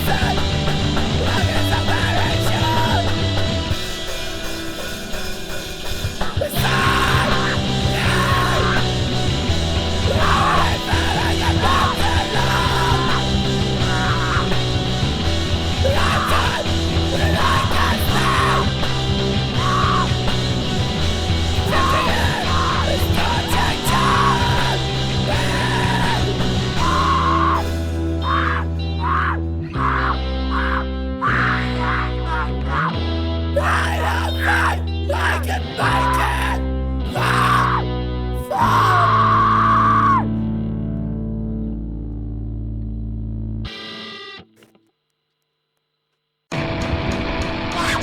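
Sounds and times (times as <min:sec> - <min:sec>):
person yelling over music: 0:00.0 - 0:03.3, 0:06.3 - 0:20.8, 0:21.5 - 0:40.4, 0:47.7 - 0:48.0
punk rock band playing: 0:00.0 - 0:40.4, 0:46.5 - 0:48.0.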